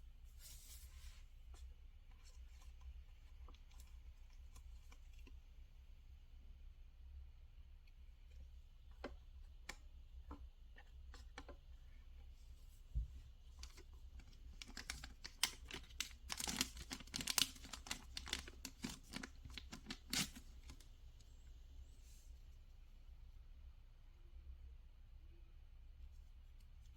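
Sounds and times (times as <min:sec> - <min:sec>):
packaging crinkling and tearing: 0:13.6 - 0:20.9
packaging taps and clicks: 0:14.6 - 0:20.4.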